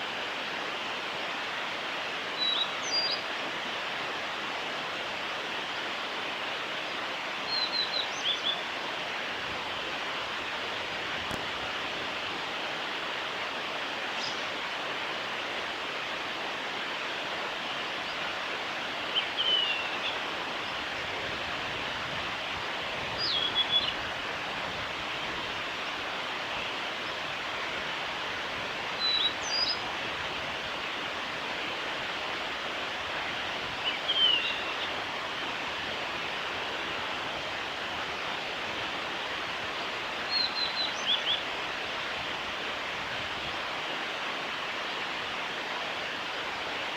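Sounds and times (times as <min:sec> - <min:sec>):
background hiss: 0:00.0 - 0:46.9.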